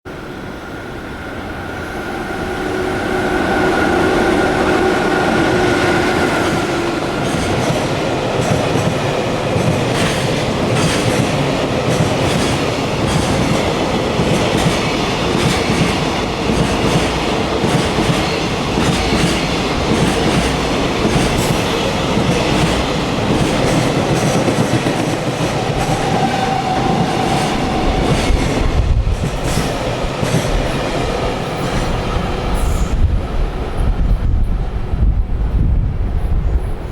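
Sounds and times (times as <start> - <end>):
train wagons rumbling: 3.7 - 36.9
locomotive whine: 25.5 - 29.1.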